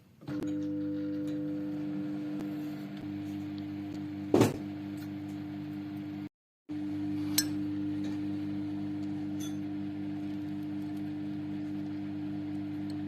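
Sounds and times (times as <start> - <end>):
microwave oven humming: 0.0 - 13.0.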